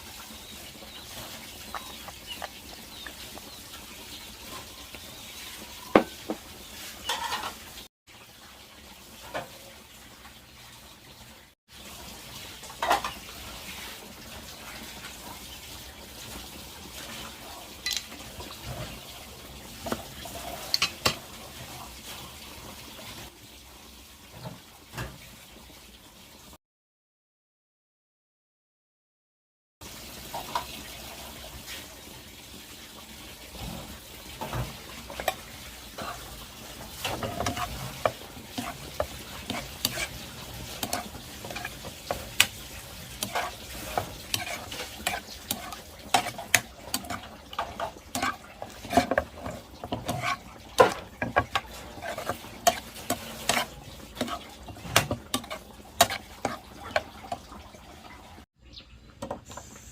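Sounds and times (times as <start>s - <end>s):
food sizzling in a pan: 0.0s - 10.8s, 11.7s - 26.5s, 29.8s - 57.6s
utensil scraping a pan: 5.4s - 7.6s, 33.5s - 57.4s.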